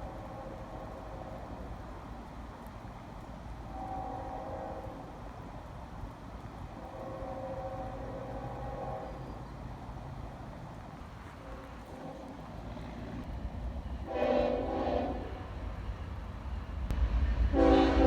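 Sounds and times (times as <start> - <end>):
low rumble of moving train: 0.0 - 18.0
locomotive horn: 3.6 - 5.2, 6.8 - 9.5, 14.0 - 15.8, 17.5 - 18.0.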